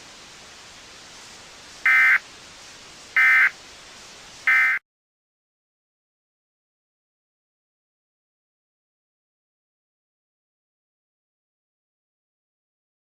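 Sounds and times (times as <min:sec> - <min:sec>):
low hiss: 0:00.0 - 0:04.8
digital data tone bursts: 0:01.9 - 0:02.2, 0:03.2 - 0:03.6, 0:04.5 - 0:04.8.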